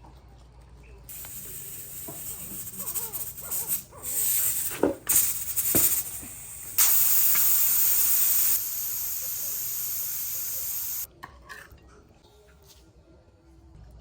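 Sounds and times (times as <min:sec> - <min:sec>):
sizzling in hot pan: 0:01.1 - 0:11.1.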